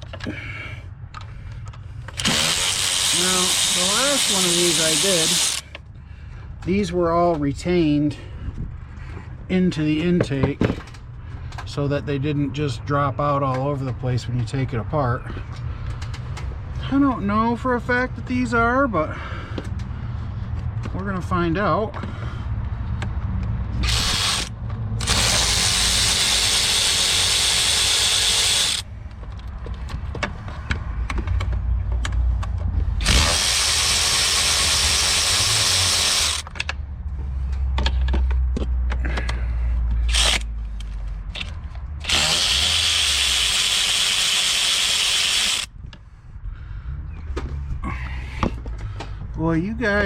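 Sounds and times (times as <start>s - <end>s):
power tool spinning bolts: 2.1s - 5.8s, 23.8s - 28.8s, 33.0s - 36.6s, 40.1s - 40.5s, 41.4s - 45.7s.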